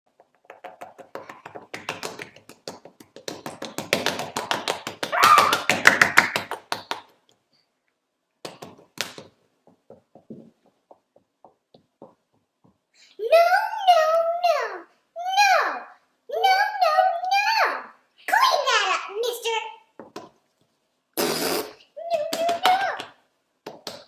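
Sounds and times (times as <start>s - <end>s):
rapid tapping and clicking by hand: 0.1s - 7.1s.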